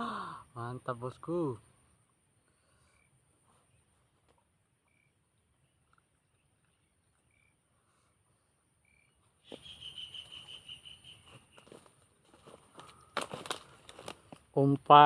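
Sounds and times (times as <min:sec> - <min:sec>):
small animal chirps: 0:08.9 - 0:11.6
rustling and handling noise: 0:11.6 - 0:14.5.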